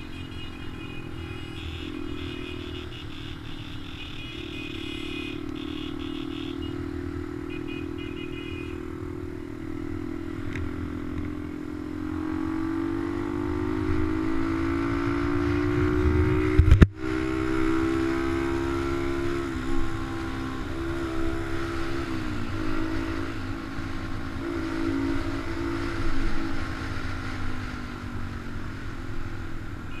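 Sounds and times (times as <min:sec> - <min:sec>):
wind rumble on microphone: 0:15.5 - 0:17.0.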